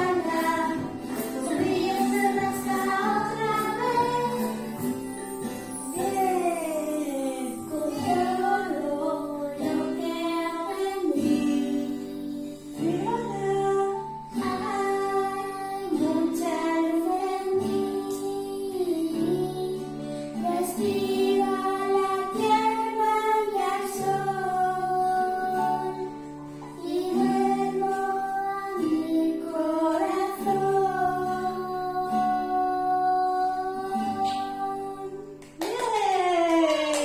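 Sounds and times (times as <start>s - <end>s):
instrumental accompaniment: 0.0s - 15.2s.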